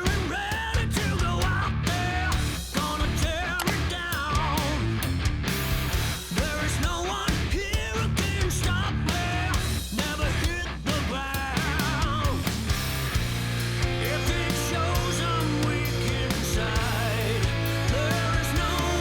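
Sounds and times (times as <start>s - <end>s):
rock music: 0.0s - 19.0s.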